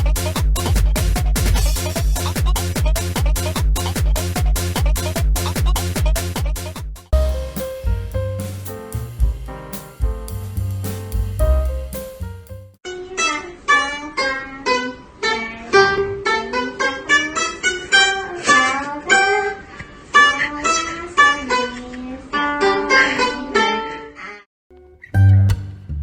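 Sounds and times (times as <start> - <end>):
music with heavy bass: 0.0 - 12.8
plucked string melody: 7.2 - 12.8, 24.7 - 26.0.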